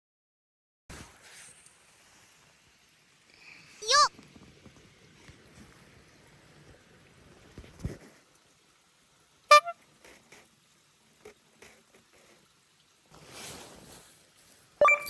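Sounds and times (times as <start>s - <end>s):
soft rustle: 13.1s - 14.8s.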